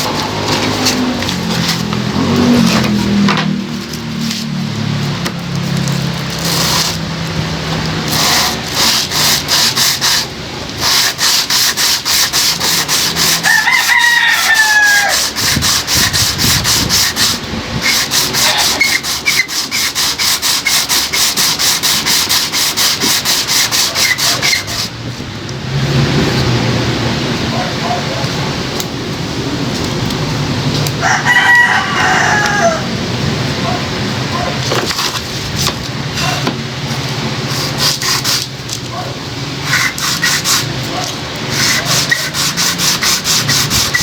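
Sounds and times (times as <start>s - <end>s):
hand sanding strokes: 0.0s - 25.0s, 34.6s - 38.8s, 39.6s - 44.0s
rooster crowing: 13.4s - 15.3s, 31.0s - 33.0s.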